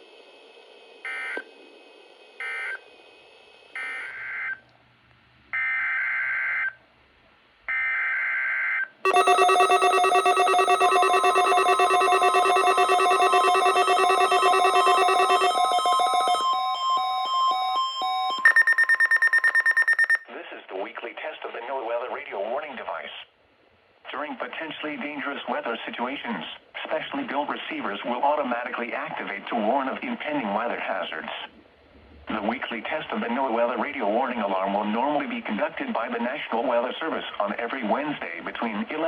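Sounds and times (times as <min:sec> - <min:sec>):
short buzzy data bursts: 0:09.1 - 0:16.4
loud steady alert tone: 0:09.1 - 0:17.5.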